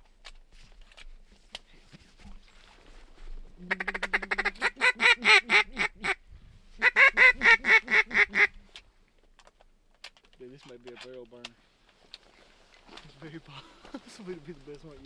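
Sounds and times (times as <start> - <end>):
duck quacking: 3.7 - 6.2, 6.8 - 8.5.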